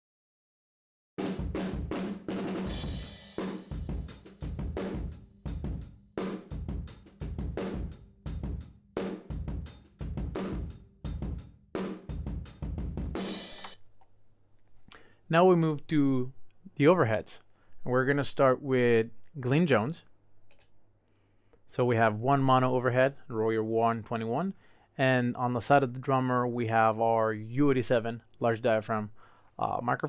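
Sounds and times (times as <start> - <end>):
drum kit playing steady beat: 1.2 - 13.8.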